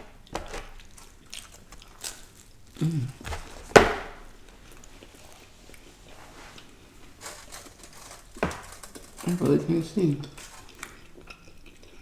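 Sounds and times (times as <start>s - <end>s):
sharp crack of food: 0.0s - 4.3s, 7.2s - 11.5s
person humming: 2.8s - 3.2s.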